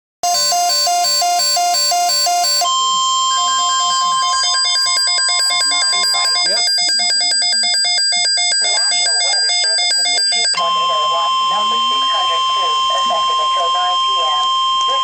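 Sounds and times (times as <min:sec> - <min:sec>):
long steady high alert tone: 0:00.2 - 0:15.0
rapid electronic alarm beeping: 0:00.2 - 0:15.0.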